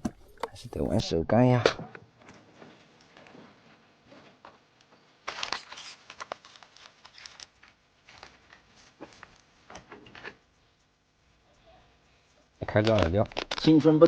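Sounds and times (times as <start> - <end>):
fishing gear rustling and clicking: 0.0 - 1.1, 5.3 - 10.9.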